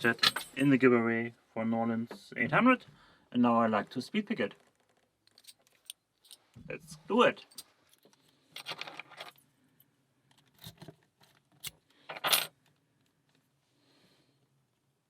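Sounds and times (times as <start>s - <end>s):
lock picks clicking and rattling: 4.9s - 6.6s, 7.5s - 9.4s, 10.3s - 12.6s.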